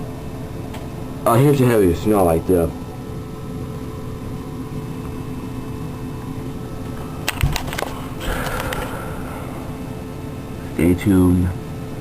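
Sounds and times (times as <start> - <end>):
steady indoor hum: 0.0 - 12.0
sharp clicks: 7.2 - 8.9.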